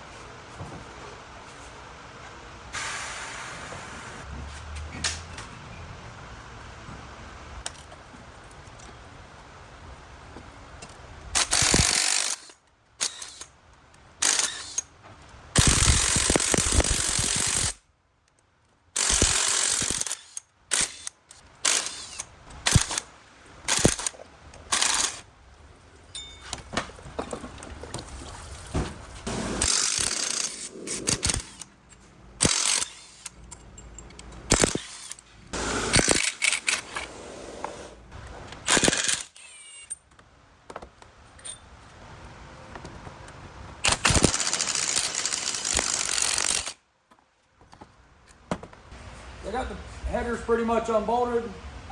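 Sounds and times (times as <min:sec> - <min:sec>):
impact wrench bursts: 0:11.4 - 0:13.5, 0:14.2 - 0:14.9, 0:15.6 - 0:17.8, 0:19.0 - 0:23.1, 0:23.7 - 0:25.3, 0:29.3 - 0:31.7, 0:32.4 - 0:33.4, 0:34.5 - 0:37.1, 0:38.6 - 0:40.0, 0:43.8 - 0:46.8.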